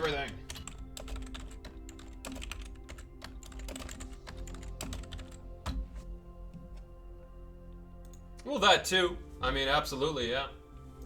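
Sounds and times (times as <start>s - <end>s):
computer keyboard typing: 0.0s - 6.0s
quiet background music: 0.0s - 11.0s.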